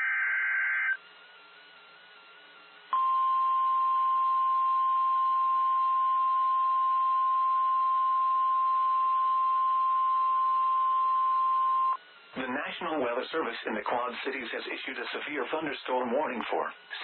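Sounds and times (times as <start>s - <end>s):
steady high alarm tone: 3.0s - 12.0s
faint radio hiss: 12.0s - 17.0s.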